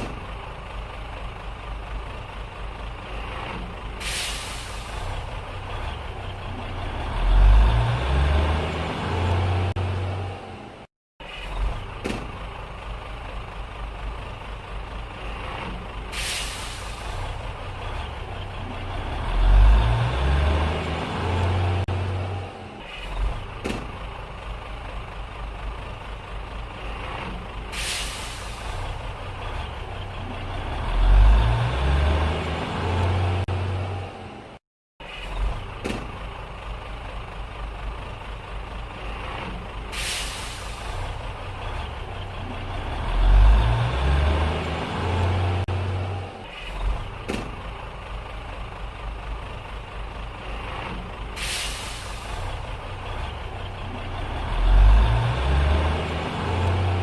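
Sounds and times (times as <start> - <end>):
truck engine idling and revving: 0.0 - 57.0
air brake hisses: 4.0 - 5.3, 16.1 - 17.4, 27.7 - 29.0, 39.9 - 41.2, 51.3 - 52.6.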